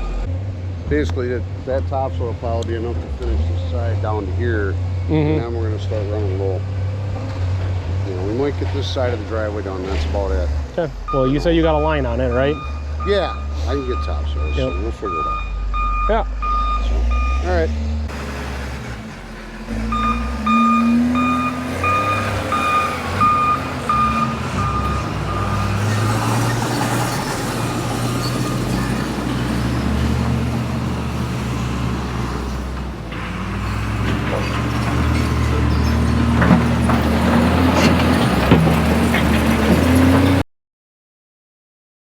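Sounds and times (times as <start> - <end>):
heavy diesel engine running: 8.1 - 40.4
backup alarm beeping: 10.8 - 17.6, 19.9 - 26.1.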